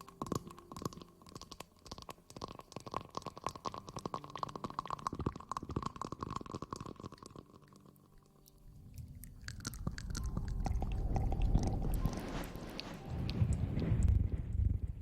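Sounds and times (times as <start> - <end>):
low rubbing rumble: 8.6 - 15.0.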